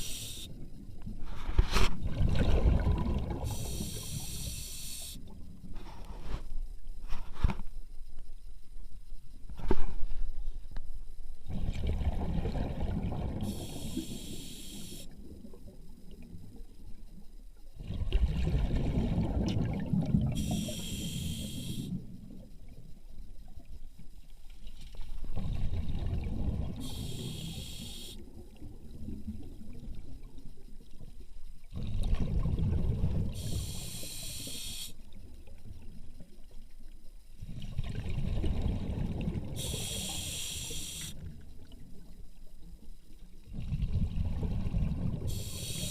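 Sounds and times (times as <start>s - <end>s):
short hiss: 0.0s - 0.5s, 3.5s - 6.5s, 13.5s - 15.1s, 20.4s - 22.0s, 26.8s - 28.2s, 33.4s - 35.0s, 39.6s - 41.2s, 45.3s - 45.9s.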